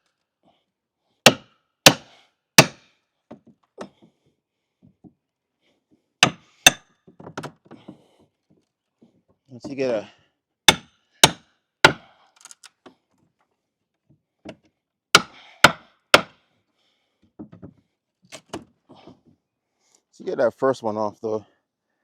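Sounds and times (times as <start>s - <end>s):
hammer striking wooden boards: 1.3s - 3.9s, 6.2s - 7.5s, 10.7s - 12.0s, 15.2s - 16.4s.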